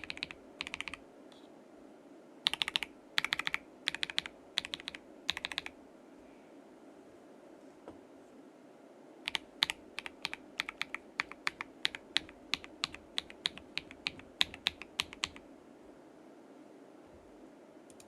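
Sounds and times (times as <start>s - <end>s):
typing on mechanical keyboard: 0.0s - 1.0s, 2.4s - 5.7s, 9.3s - 15.4s.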